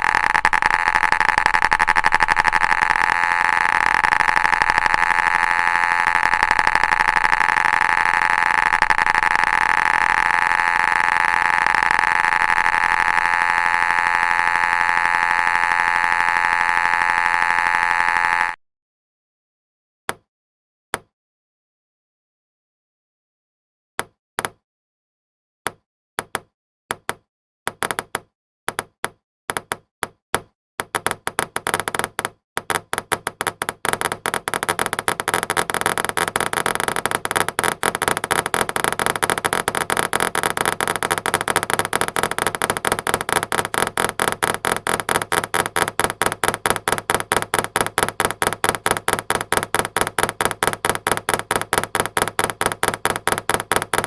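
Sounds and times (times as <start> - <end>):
geiger counter clicks: 0.0 - 18.6, 33.7 - 54.0.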